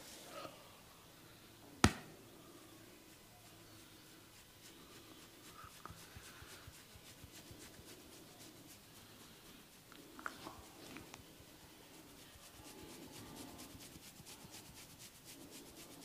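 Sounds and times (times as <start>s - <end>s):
hands rubbing scalp: 3.1s - 16.0s.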